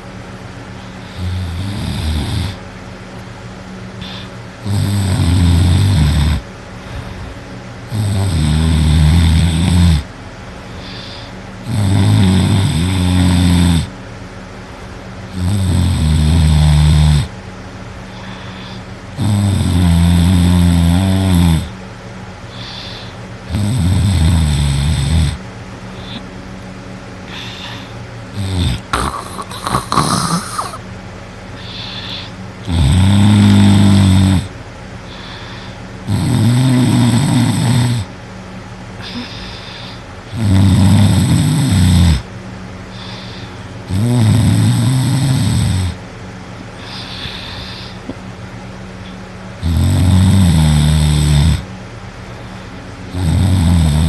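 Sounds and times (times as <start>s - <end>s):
steady low hum: 0.0s - 54.0s
person snoring heavily: 0.8s - 2.6s, 4.0s - 13.9s, 15.3s - 17.3s, 18.0s - 21.8s, 22.5s - 26.3s, 27.3s - 30.8s, 31.6s - 38.1s, 39.0s - 42.3s, 42.9s - 46.0s, 46.7s - 48.1s, 49.6s - 51.7s, 53.1s - 54.0s.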